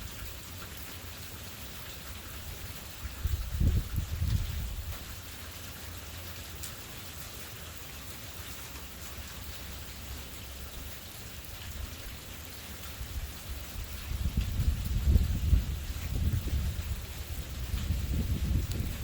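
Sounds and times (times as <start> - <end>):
steady rain: 0.0 - 19.0
low thunder rumble: 3.1 - 5.0, 13.1 - 19.0.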